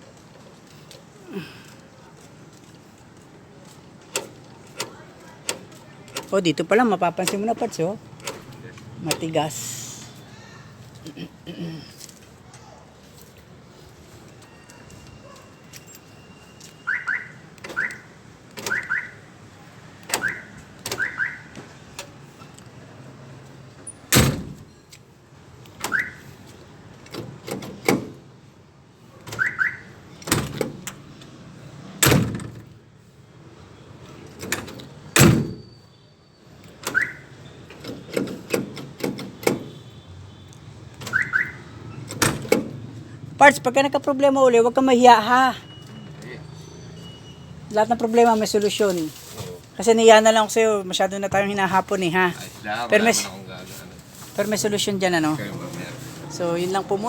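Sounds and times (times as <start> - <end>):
double alarm chirps: 14.4 - 18.1, 18.7 - 19.2, 20.2 - 21.5, 41.1 - 41.7, 45.2 - 47.8
door lock actuator thunks: 34.4 - 35.6.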